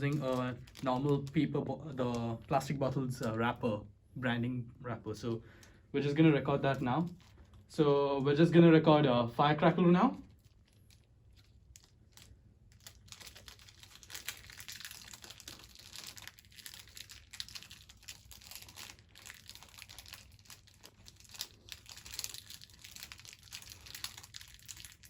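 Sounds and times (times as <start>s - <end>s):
plastic wrapper crinkling: 0.0s - 3.8s, 5.0s - 8.3s, 10.0s - 25.0s.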